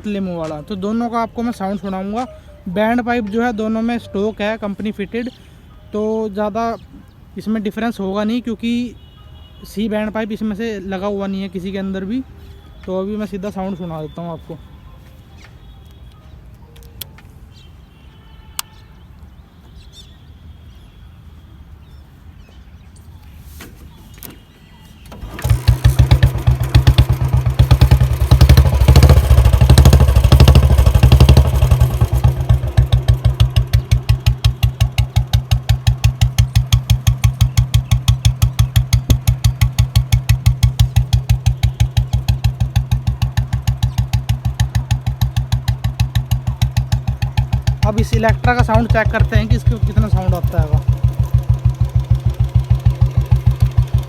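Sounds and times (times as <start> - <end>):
motorcycle engine revving and idling: 25.1 - 54.0.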